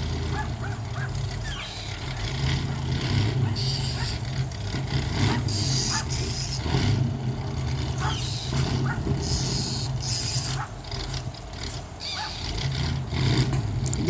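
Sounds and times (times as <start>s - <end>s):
bird giving harsh calls: 1.0s - 2.3s, 12.0s - 12.5s.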